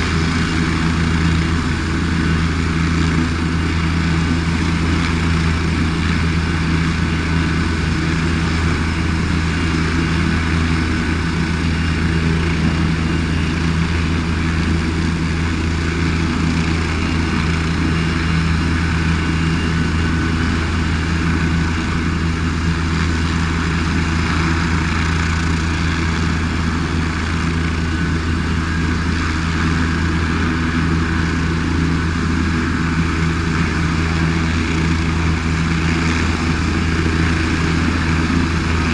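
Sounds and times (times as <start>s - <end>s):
helicopter running: 0.0s - 38.9s.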